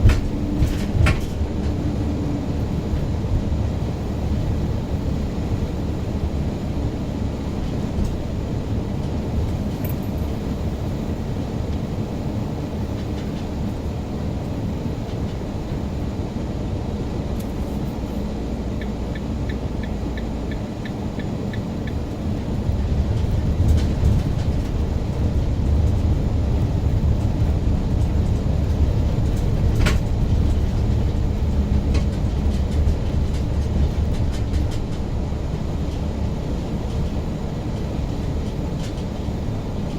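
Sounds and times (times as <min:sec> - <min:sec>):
car driving rumble: 0:00.0 - 0:39.9.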